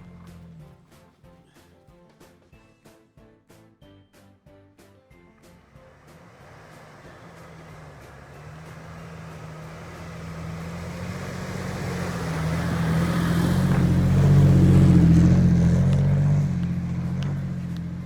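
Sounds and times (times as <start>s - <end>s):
off-road vehicle engine running: 0.0s - 1.4s, 5.3s - 18.0s.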